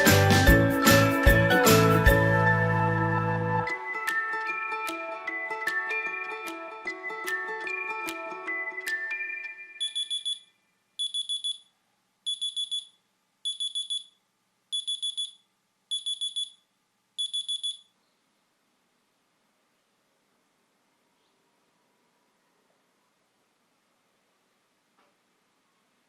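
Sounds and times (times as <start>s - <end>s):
electronic alarm beeping: 9.7s - 11.7s, 12.3s - 16.6s, 17.2s - 18.0s.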